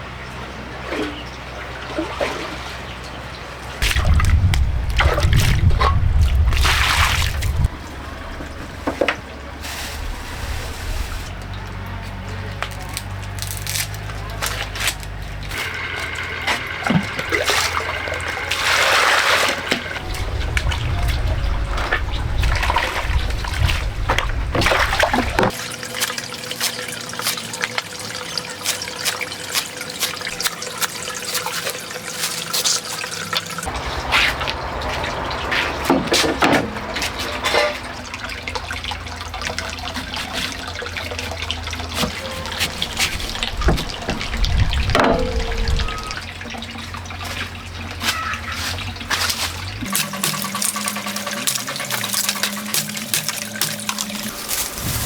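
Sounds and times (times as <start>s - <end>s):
water splashing and trickling: 0.0s - 55.0s.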